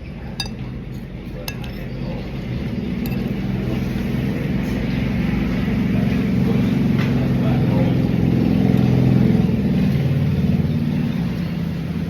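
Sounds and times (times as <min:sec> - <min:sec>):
vehicle engine running: 0:00.0 - 0:12.0
cutlery clinking on plate: 0:00.3 - 0:00.7, 0:01.4 - 0:02.0, 0:03.0 - 0:03.5.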